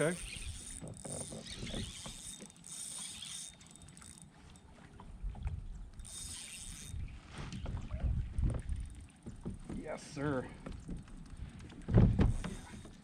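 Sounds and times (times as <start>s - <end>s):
fishing reel clicking: 0.0s - 4.7s, 5.9s - 7.1s
kayak knocks and bumps: 7.3s - 13.0s.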